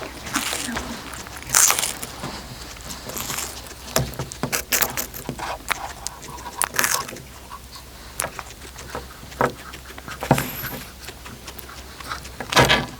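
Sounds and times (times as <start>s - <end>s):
scraping rustling noises: 0.0s - 7.3s, 8.4s - 12.9s
cat chewing clicks: 0.3s - 7.3s.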